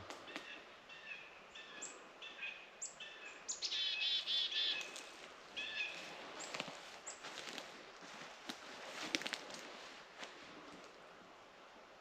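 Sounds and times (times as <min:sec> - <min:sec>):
small songbird calling: 0:00.2 - 0:07.3.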